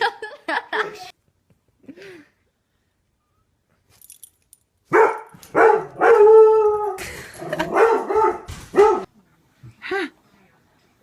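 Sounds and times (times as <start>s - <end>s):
dog barking and howling: 4.9s - 9.1s.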